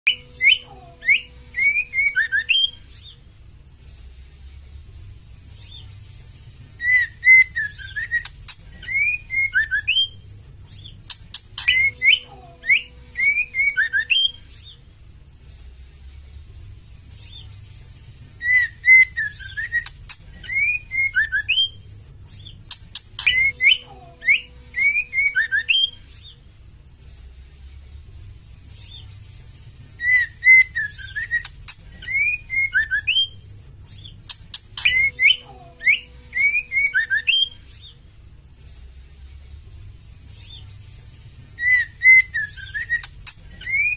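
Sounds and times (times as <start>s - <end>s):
bird whistling and chattering: 0.1s - 3.2s, 5.6s - 14.8s, 17.2s - 26.4s, 29.9s - 38.0s, 40.4s - 43.9s.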